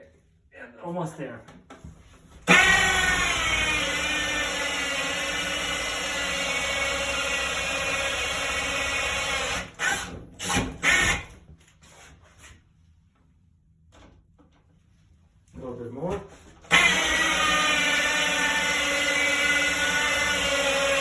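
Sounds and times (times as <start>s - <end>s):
electric drill cutting wood: 2.5s - 11.3s, 16.7s - 21.0s.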